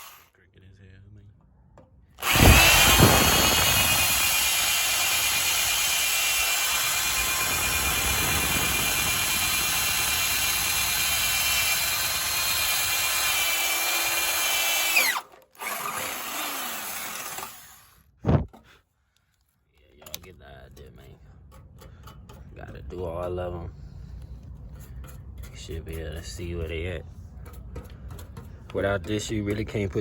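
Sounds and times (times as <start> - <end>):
electric drill cutting metal: 0.0 - 0.3, 2.2 - 18.0.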